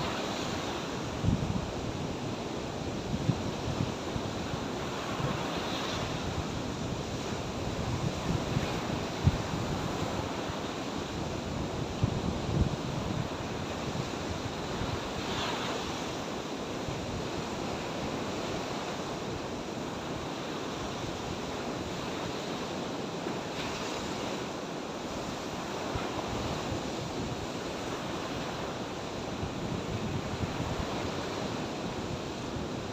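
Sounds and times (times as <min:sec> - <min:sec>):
sea surf washing on shore: 0:00.0 - 0:32.9
wind buffeting microphone: 0:00.6 - 0:02.1, 0:02.9 - 0:10.6, 0:11.2 - 0:15.4, 0:25.8 - 0:32.9.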